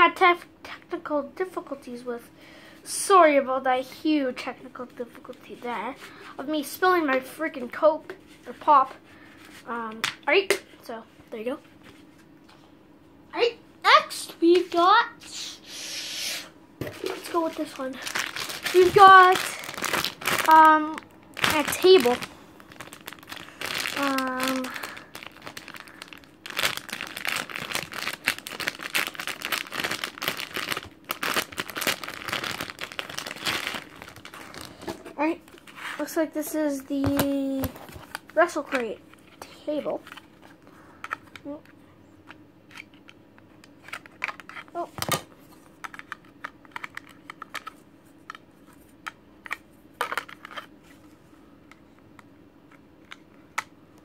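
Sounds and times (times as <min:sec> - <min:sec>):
packaging crinkling: 0:16.9 - 0:35.8.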